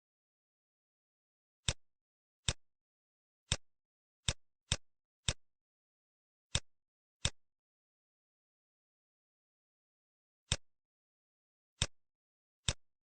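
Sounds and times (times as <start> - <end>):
computer mouse clicks: 2.4 - 2.6, 4.3 - 5.4, 12.6 - 12.9.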